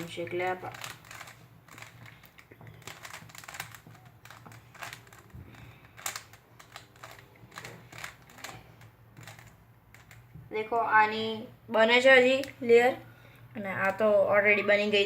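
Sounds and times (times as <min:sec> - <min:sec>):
plastic puzzle cube clicking: 0:00.6 - 0:10.3.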